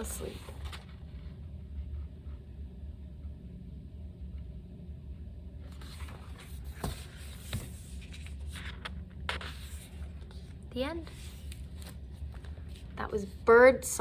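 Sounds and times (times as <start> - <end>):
low background rumble: 0.0 - 14.0.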